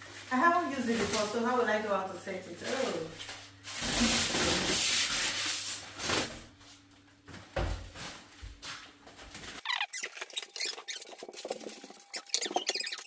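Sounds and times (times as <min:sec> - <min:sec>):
packaging rubbing and scraping: 0:09.6 - 0:13.0.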